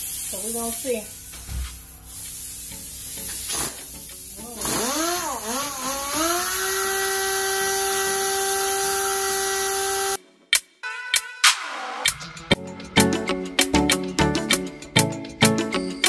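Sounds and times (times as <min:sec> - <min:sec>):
electric power sander running: 0:04.4 - 0:10.2.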